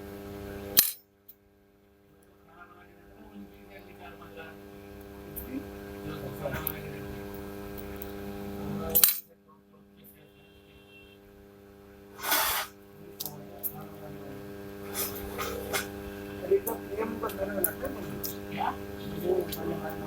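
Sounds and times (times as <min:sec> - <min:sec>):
steady electrical hum: 0:00.0 - 0:20.0
metallic clicks and clinks: 0:00.8 - 0:01.0.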